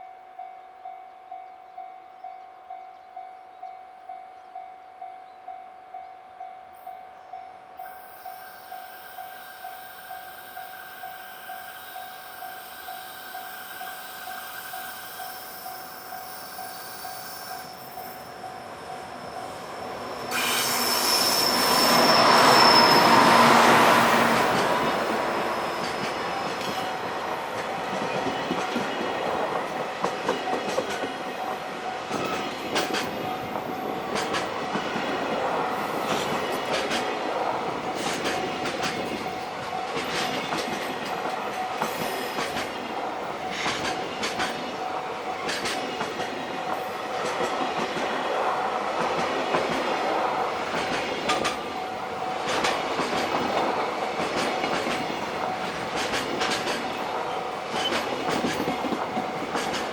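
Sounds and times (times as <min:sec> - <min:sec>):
train wheels clacking over rail joints: 0:20.3 - 0:31.5, 0:32.1 - 0:59.9.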